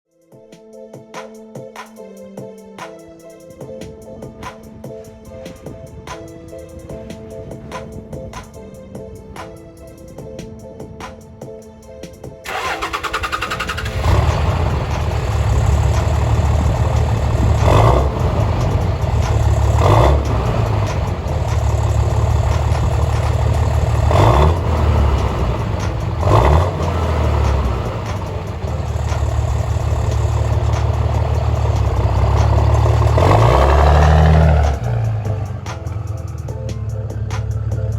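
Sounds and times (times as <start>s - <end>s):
diesel engine starting: 12.4s - 37.9s
diesel engine running: 12.5s - 37.9s.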